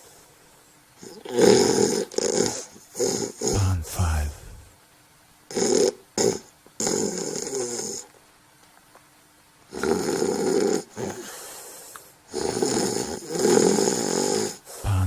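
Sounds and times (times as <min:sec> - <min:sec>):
snorts: 0:01.0 - 0:03.6, 0:05.5 - 0:08.1, 0:09.7 - 0:14.9
person snoring: 0:03.5 - 0:04.6.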